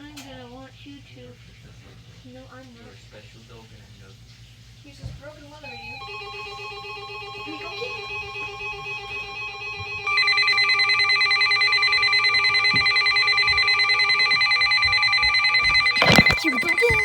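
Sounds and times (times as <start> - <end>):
faint steady alarm tones: 5.6 - 17.0
loud pulsing electronic alarm tone: 9.6 - 16.4.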